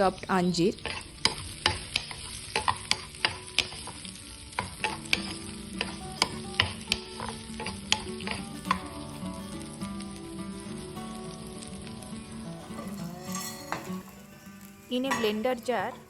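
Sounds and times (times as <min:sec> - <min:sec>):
light sizzle: 0:00.0 - 0:16.0
spoon scraping a pan: 0:00.8 - 0:08.8, 0:12.6 - 0:16.0.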